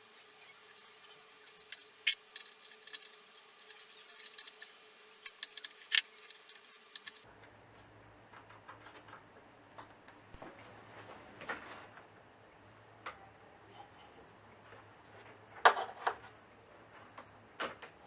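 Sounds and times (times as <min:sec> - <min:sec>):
compressed-air engine clicking: 0:00.0 - 0:07.2.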